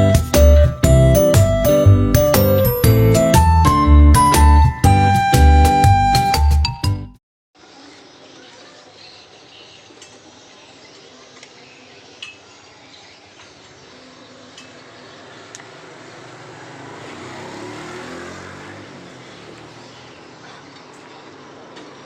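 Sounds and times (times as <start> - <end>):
workshop background noise: 7.6 - 16.1, 18.6 - 22.0.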